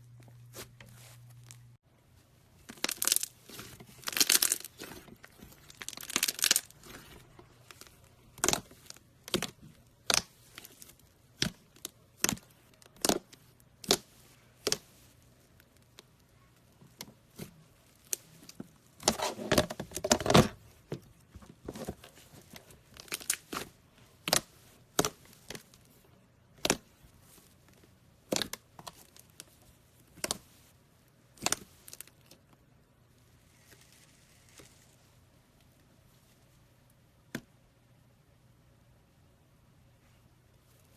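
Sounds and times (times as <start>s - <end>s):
slime crackling: 2.6s - 19.3s, 21.1s - 30.6s.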